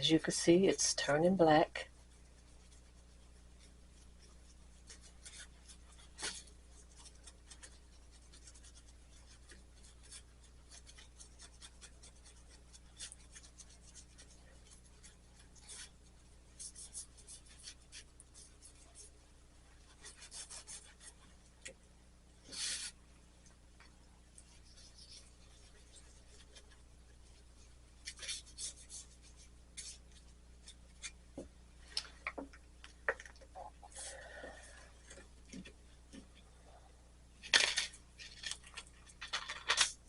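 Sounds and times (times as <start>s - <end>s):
toothbrush scrubbing: 0.8s - 21.8s.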